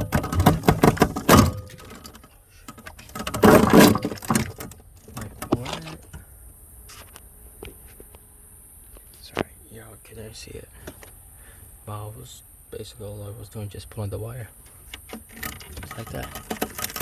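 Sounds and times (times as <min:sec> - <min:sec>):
clicks and rattles of wiring: 0:00.0 - 0:06.2, 0:14.7 - 0:17.0.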